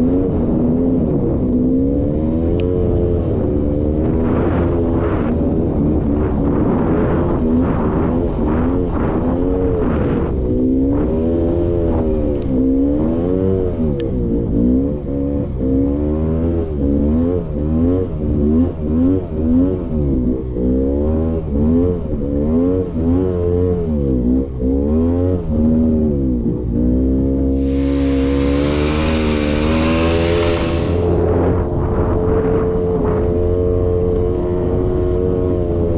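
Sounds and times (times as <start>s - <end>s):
atv engine revving: 27.5s - 32.6s.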